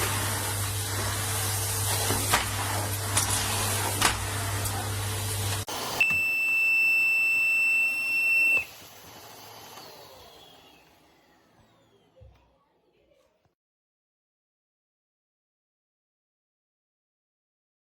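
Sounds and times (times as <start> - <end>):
vacuum cleaner humming: 0.0 - 12.5.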